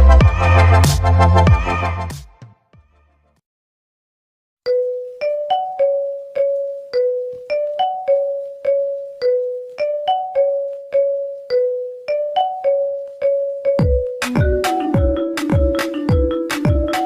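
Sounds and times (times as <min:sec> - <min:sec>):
bell-like ringtone melody: 0:04.7 - 0:17.0.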